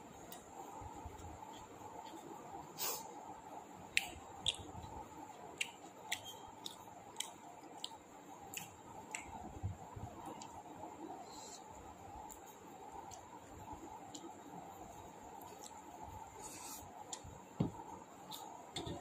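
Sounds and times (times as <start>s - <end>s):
wet mouth clicks and smacks: 3.9s - 4.8s, 5.6s - 9.4s
person chewing food: 4.0s - 4.8s, 5.5s - 9.4s, 15.4s - 17.3s.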